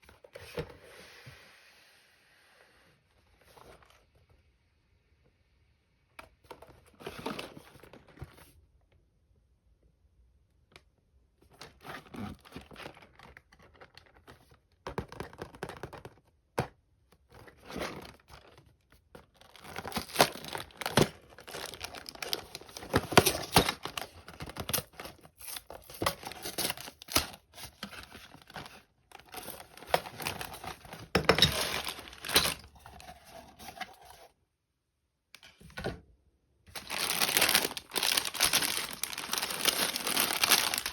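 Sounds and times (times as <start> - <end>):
packaging torn and crinkled: 19.2 - 32.6, 36.7 - 40.9.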